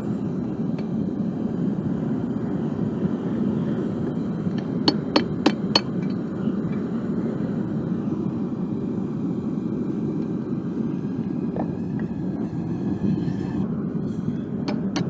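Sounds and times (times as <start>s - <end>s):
hammer ringing on anvil: 4.6s - 6.2s.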